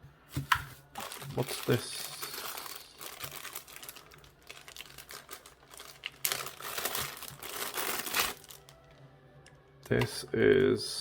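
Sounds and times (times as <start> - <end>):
plastic bag crinkling: 0.8 - 9.0.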